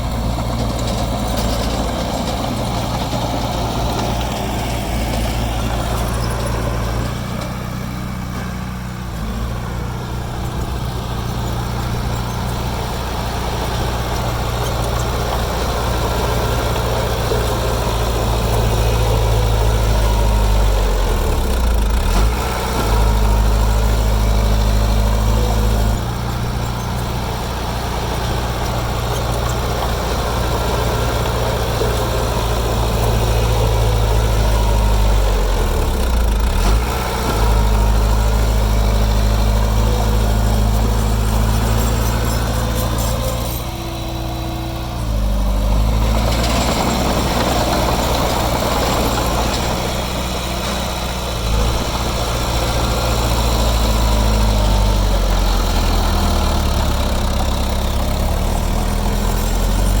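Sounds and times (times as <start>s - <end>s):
heavy diesel engine running: 0.0s - 60.0s.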